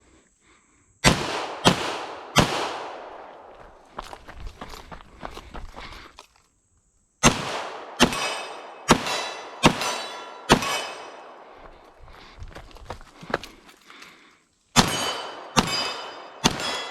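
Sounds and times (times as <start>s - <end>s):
pistol shots with echo: 1.0s - 3.6s, 7.2s - 11.6s, 14.8s - 16.9s.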